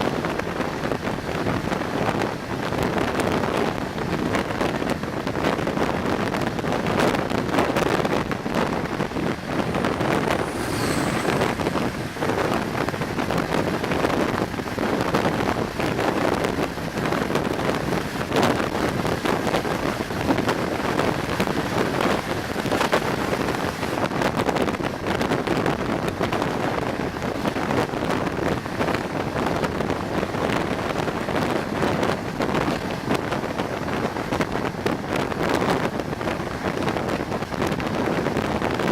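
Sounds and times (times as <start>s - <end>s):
wind buffeting microphone: 0.0s - 38.9s
train running noise: 0.1s - 35.0s.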